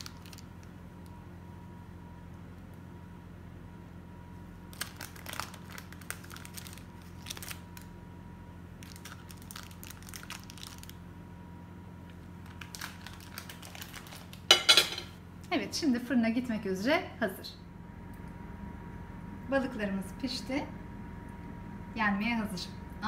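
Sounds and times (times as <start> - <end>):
wrapper crumpling and tearing: 0.0 - 0.7, 4.7 - 8.0, 8.8 - 11.0, 12.4 - 14.5
faint steady hum: 0.0 - 23.0.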